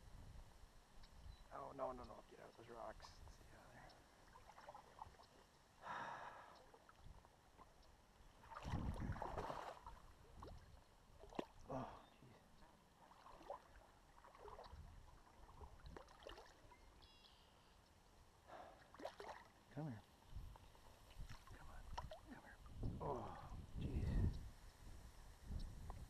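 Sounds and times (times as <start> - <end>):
stream water splashing and gurgling: 4.1 - 5.5, 6.4 - 17.4, 18.5 - 22.5.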